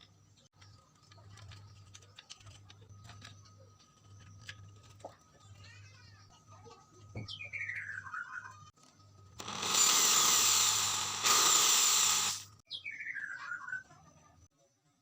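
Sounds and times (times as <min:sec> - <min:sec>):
power tool running: 0:09.4 - 0:12.5.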